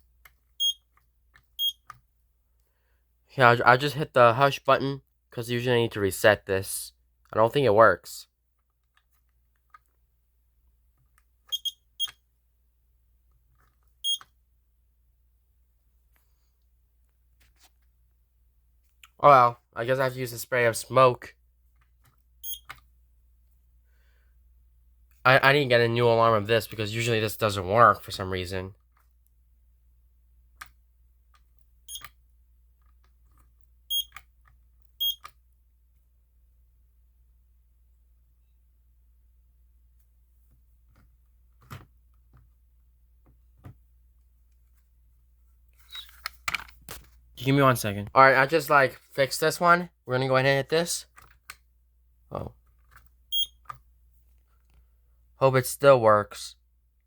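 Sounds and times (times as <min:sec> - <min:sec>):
smoke alarm chirps: 0:00.6 - 0:00.8, 0:01.6 - 0:01.8, 0:11.5 - 0:12.2, 0:14.0 - 0:14.2, 0:22.4 - 0:22.7, 0:31.9 - 0:32.1, 0:33.9 - 0:34.2, 0:35.0 - 0:35.3, 0:53.3 - 0:53.6.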